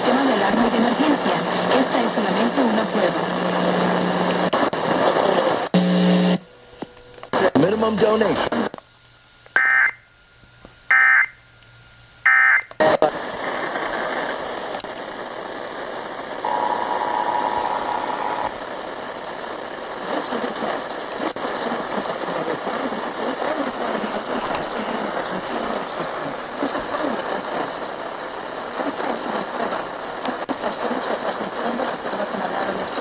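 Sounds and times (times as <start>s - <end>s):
radio static: 0.0s - 6.4s, 7.2s - 8.8s, 12.3s - 33.0s.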